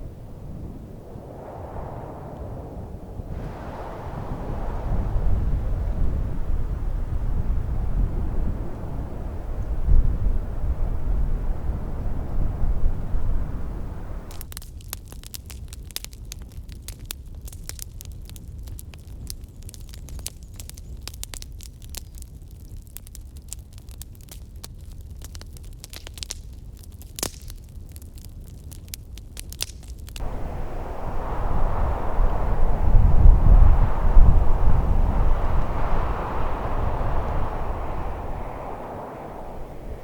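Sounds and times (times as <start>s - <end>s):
wind rumbling on microphone: 0.0s - 14.5s, 30.2s - 40.0s.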